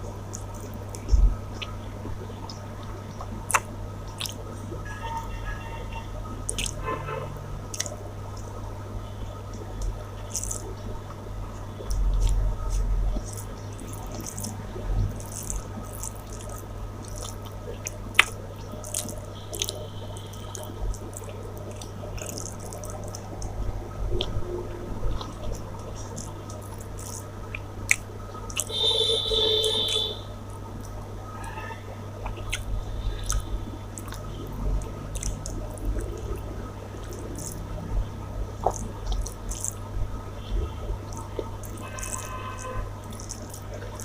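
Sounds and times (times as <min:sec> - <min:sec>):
wet chewing and squishing: 0:00.0 - 0:05.3, 0:06.4 - 0:06.9, 0:07.6 - 0:08.5, 0:09.5 - 0:31.0, 0:32.2 - 0:44.0
steady low hum: 0:00.0 - 0:44.0
wet mouth clicks and smacks: 0:00.3 - 0:01.8, 0:02.5 - 0:04.4, 0:06.5 - 0:06.8, 0:07.7 - 0:08.5, 0:09.5 - 0:10.7, 0:11.9 - 0:23.6, 0:25.1 - 0:28.7, 0:32.2 - 0:38.0, 0:38.6 - 0:39.8, 0:41.1 - 0:44.0.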